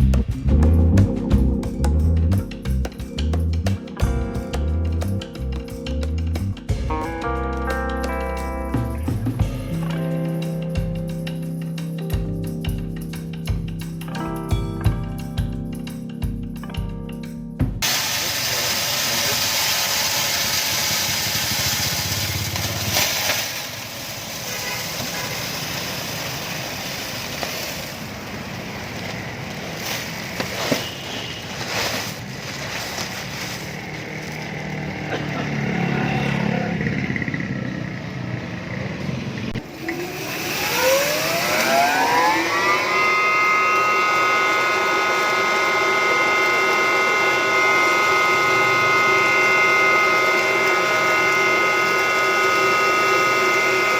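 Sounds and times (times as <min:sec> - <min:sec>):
mill whine rising in pitch: 0:39.3 - 0:53.9.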